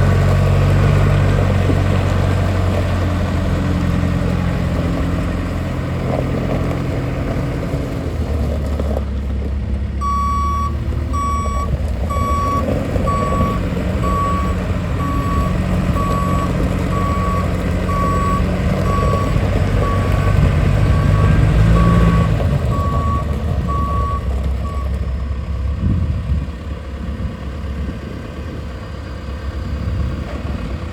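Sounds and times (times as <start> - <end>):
diesel engine droning: 0.0 - 30.9
reverse alarm beeping: 10.0 - 24.9.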